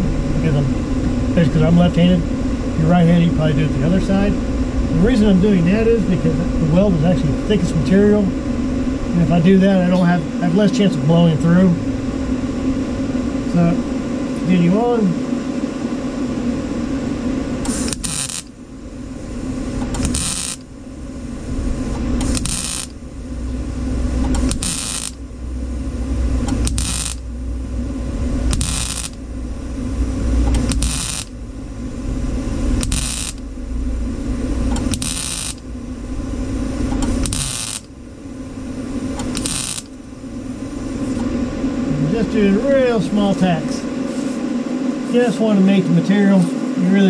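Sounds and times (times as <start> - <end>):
steady hum: 0.0 - 47.0
short welding bursts: 17.6 - 18.5, 19.9 - 20.7, 22.2 - 23.0, 24.3 - 25.2, 26.5 - 27.2, 28.5 - 29.2, 30.5 - 31.4, 32.8 - 33.4, 34.8 - 35.6, 37.0 - 37.9, 39.2 - 40.0.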